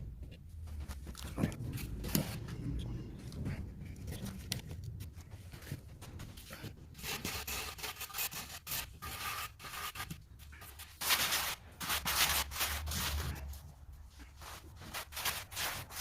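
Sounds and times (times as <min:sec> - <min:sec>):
tool scraping across mortar: 0:06.5 - 0:13.5, 0:14.3 - 0:16.0.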